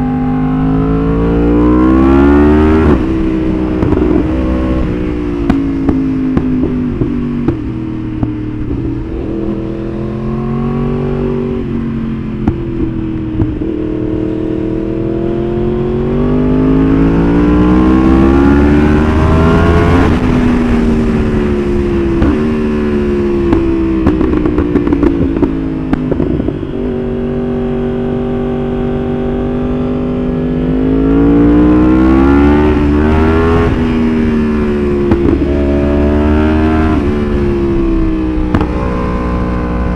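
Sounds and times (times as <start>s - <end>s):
motorcycle engine revving: 0.0s - 39.9s
exhaust crackles and pops: 1.9s - 10.0s, 11.2s - 14.6s, 17.0s - 27.1s, 31.8s - 39.9s.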